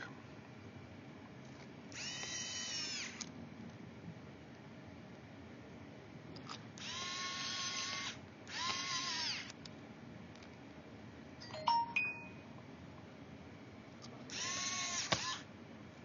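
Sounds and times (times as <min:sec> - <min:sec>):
electric screwdriver spinning: 0:02.0 - 0:03.3, 0:06.8 - 0:09.6, 0:14.3 - 0:15.5.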